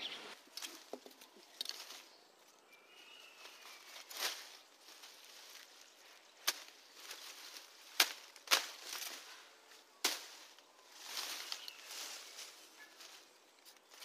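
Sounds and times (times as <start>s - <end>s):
leaves and stems rustling: 0.0s - 14.0s
branches being chopped: 0.5s - 2.1s, 3.6s - 5.7s, 6.4s - 9.3s, 10.0s - 14.0s.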